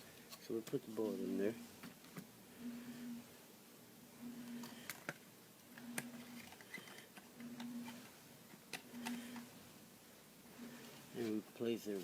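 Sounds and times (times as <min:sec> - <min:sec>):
low hum: 0:02.4 - 0:06.5.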